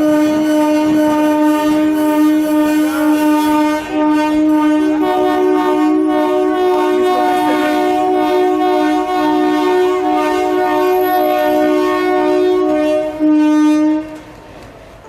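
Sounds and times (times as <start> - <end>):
locomotive air horn blast: 0.0 - 14.3.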